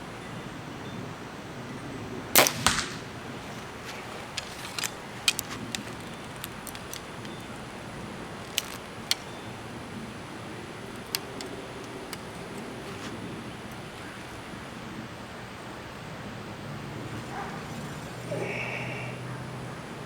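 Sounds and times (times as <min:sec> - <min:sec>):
arrow striking target: 0:02.4 - 0:03.2
bow firing crack: 0:02.4 - 0:07.2
light clicks: 0:03.6 - 0:09.8, 0:10.6 - 0:14.4.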